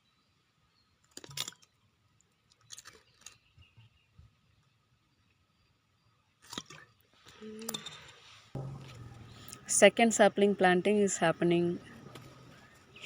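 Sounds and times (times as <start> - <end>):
low hum: 8.6 - 13.0.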